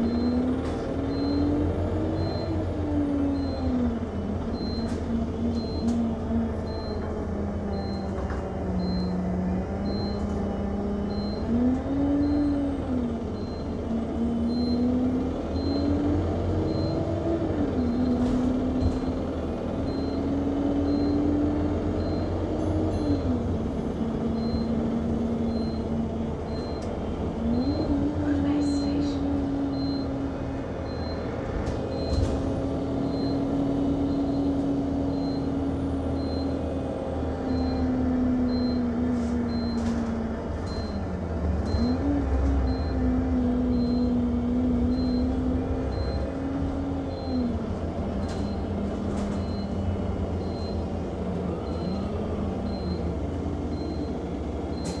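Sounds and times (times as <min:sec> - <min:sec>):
bus engine droning: 0:00.0 - 0:55.0
rattles in bus cabin: 0:00.0 - 0:55.0.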